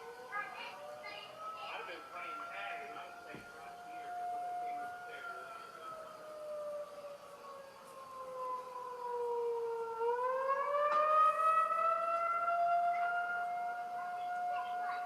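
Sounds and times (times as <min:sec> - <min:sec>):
warning siren wailing: 0:00.0 - 0:15.0.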